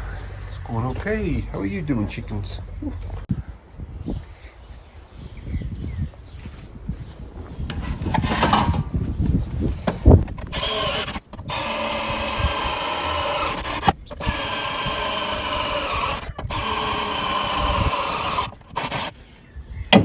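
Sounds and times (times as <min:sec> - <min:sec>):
drill boring into sheet steel: 0:07.7 - 0:08.9, 0:10.4 - 0:19.1.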